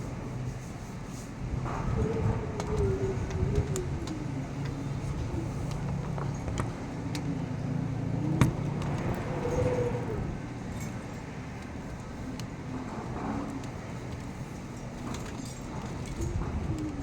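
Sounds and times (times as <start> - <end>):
vehicle engine running: 1.6 - 12.2.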